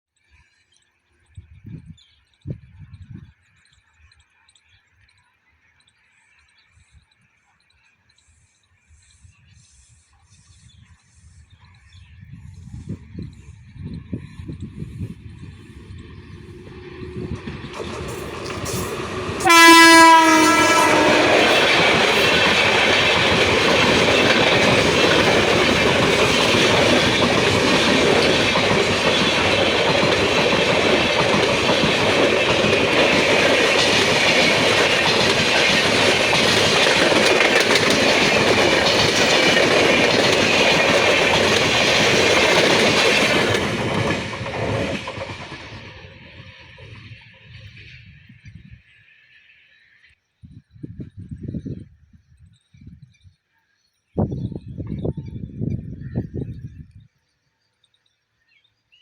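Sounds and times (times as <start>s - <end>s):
train coaches rushing and clattering: 12.5s - 50.0s
locomotive horn blast: 19.4s - 22.0s.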